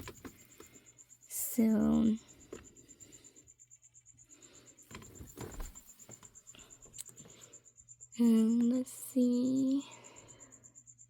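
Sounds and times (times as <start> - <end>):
handling rustles and knocks: 0.0 - 0.8, 4.9 - 6.4
cricket chirping: 0.0 - 11.0.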